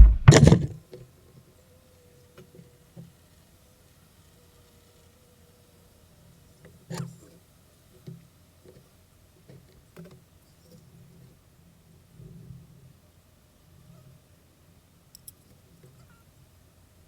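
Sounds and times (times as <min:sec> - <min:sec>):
wooden hive parts knocking: 0:00.0 - 0:00.8.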